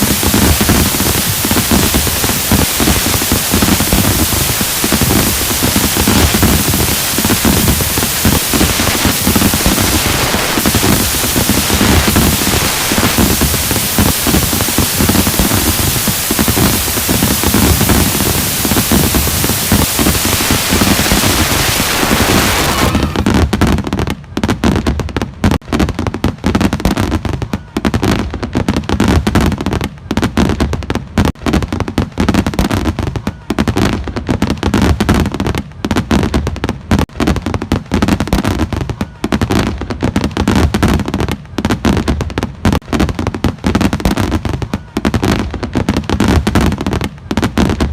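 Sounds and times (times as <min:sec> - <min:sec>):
loud firework hiss: 0:00.0 - 0:23.7
firework bangs and crackling: 0:00.0 - 0:47.9.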